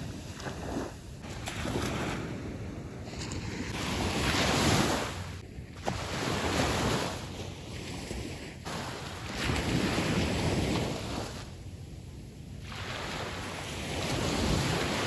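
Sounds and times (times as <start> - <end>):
sea waves washing ashore: 0.0 - 15.0
wind buffeting microphone: 0.0 - 15.0.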